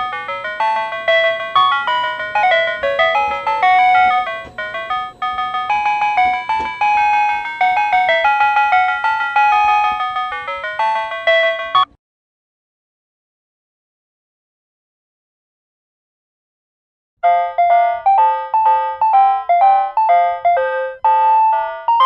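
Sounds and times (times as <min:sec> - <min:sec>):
electronic chime melody: 0:00.0 - 0:11.9.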